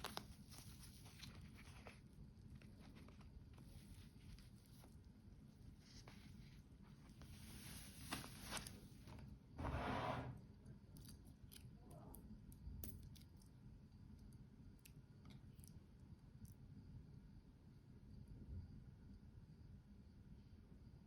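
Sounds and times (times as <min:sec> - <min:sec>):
packaging rustling: 0:00.0 - 0:04.9, 0:07.2 - 0:09.2.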